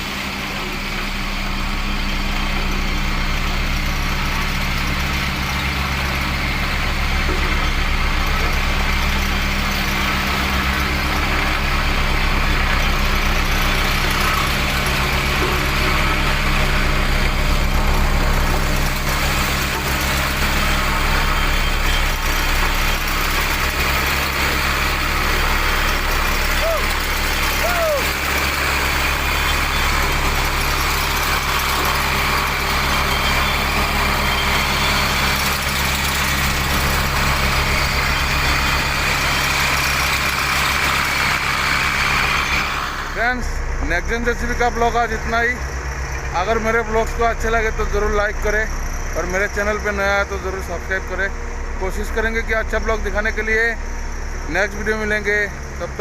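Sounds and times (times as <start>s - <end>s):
road roller engine drone: 0.0s - 56.0s
low vibrator pulsing: 0.4s - 40.6s.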